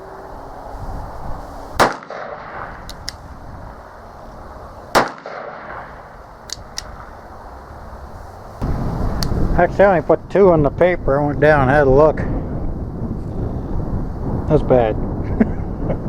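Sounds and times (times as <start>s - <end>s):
revolver gunshots: 1.8s - 2.9s, 4.9s - 6.2s.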